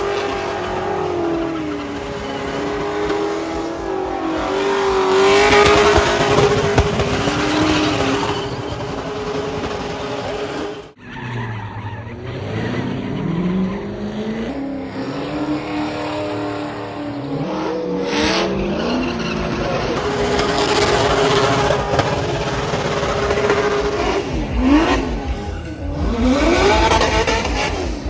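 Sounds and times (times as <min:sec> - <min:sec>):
car engine revving hard: 0:00.0 - 0:11.0, 0:12.1 - 0:28.0
tires squealing: 0:00.0 - 0:28.0.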